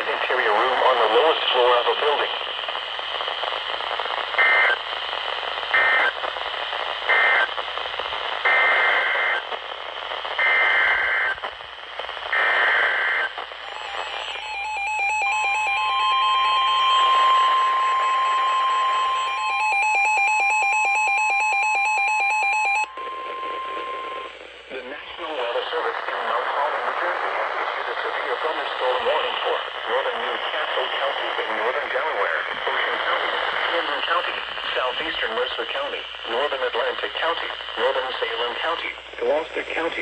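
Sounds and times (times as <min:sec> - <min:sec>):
steady warning alarm tone: 0:12.9 - 0:24.3
rapid pulsing beep: 0:13.6 - 0:24.3.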